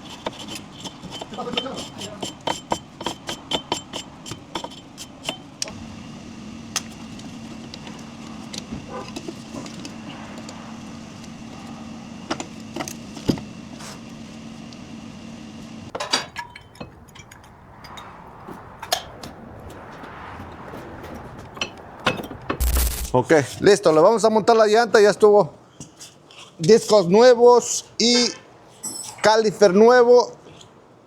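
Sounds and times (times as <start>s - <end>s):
steady low hum: 22.6s - 23.2s
metallic clinks of tools: 28.8s - 29.2s.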